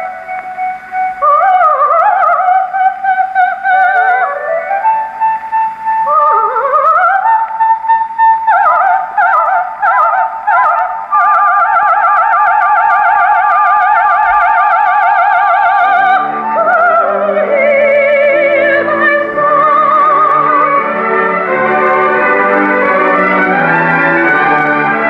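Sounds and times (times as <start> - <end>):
gramophone record crackle: 0.0 - 25.0
soprano singing aria: 0.0 - 25.0
orchestra playing: 16.1 - 25.0.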